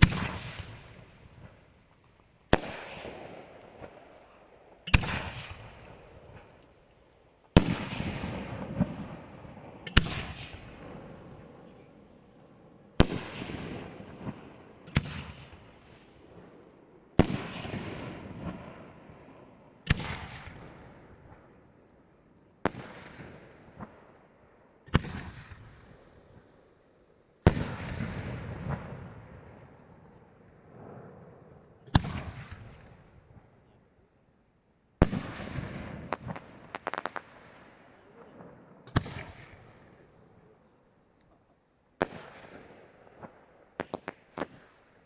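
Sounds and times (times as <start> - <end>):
small firework pops: 0.0 - 11.9, 13.0 - 16.2, 27.4 - 30.0, 35.0 - 37.5, 38.2 - 39.9, 42.0 - 44.8.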